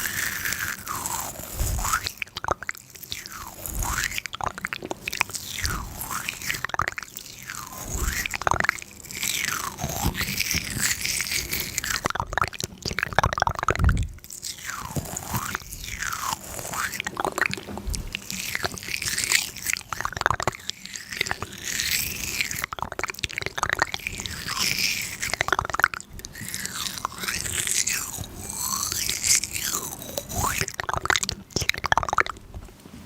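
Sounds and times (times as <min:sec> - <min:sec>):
crisp crackling and crunching clicks: 0:00.0 - 0:33.0
swishes near microphone: 0:01.1 - 0:02.1.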